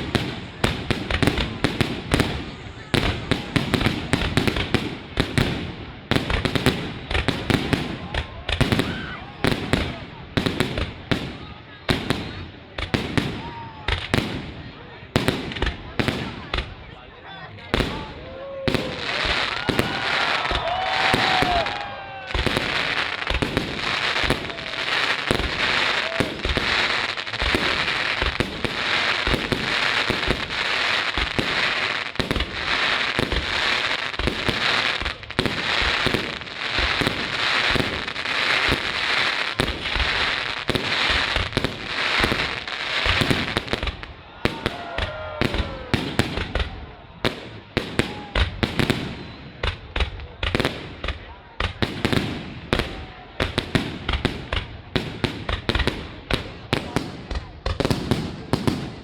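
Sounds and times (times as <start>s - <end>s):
fireworks bangs and crackling: 0.0s - 59.0s
firework whistling: 18.7s - 44.8s.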